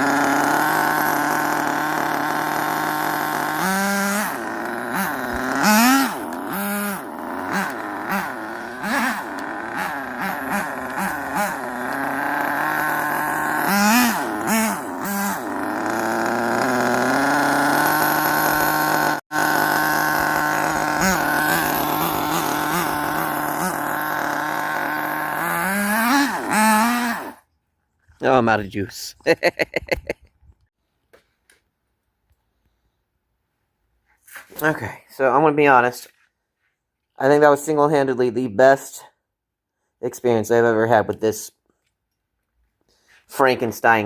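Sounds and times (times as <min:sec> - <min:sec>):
small engine revving: 0:00.0 - 0:27.5.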